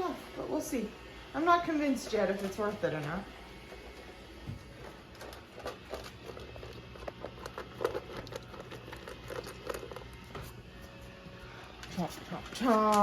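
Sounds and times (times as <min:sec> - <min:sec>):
dog chewing food crunches: 0:03.4 - 0:13.0.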